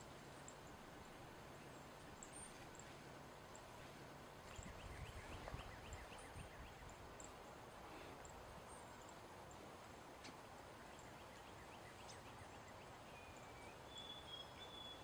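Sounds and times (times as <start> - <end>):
bird whistling notes: 13.1 - 15.0.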